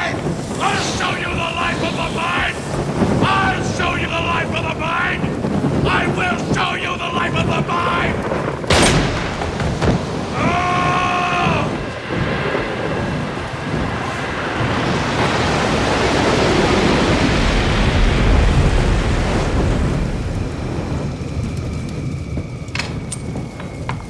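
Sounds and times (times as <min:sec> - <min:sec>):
man shouting: 0:00.0 - 0:08.4, 0:10.3 - 0:11.9
large fire roaring: 0:00.0 - 0:24.0.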